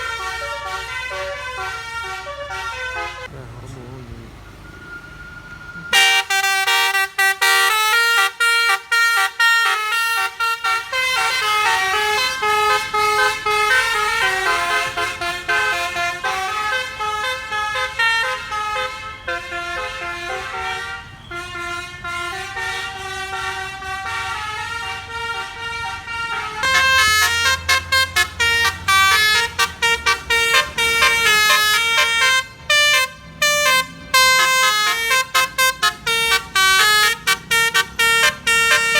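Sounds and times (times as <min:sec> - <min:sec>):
multi-tone bus horn melody: 0:00.0 - 0:03.4, 0:04.3 - 0:38.9.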